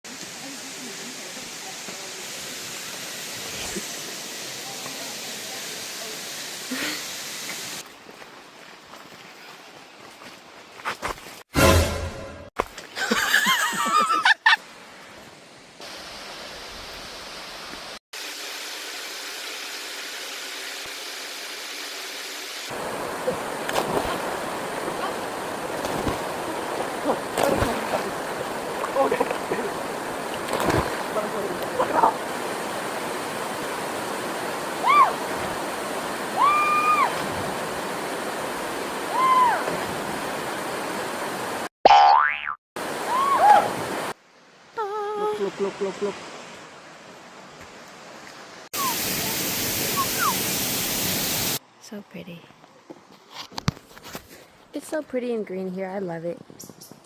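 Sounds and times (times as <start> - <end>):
rushing water: 0.0 - 10.8, 12.6 - 41.7, 42.8 - 51.8
loud warbling call: 50.0 - 50.4.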